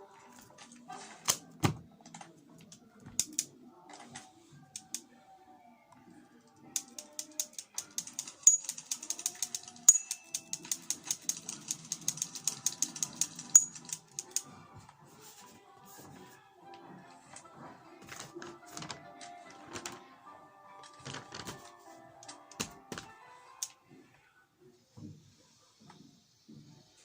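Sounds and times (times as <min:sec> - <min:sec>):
faint music: 0:00.0 - 0:27.0
rapid mechanical clicking: 0:06.8 - 0:14.4.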